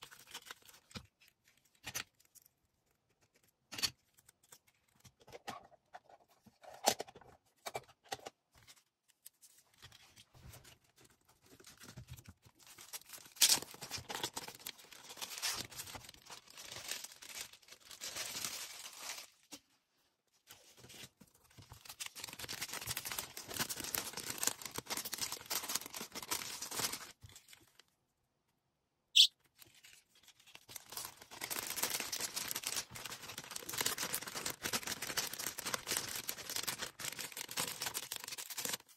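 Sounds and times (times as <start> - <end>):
plastic packaging rustling: 9.7 - 19.7, 20.5 - 27.8, 29.5 - 38.9.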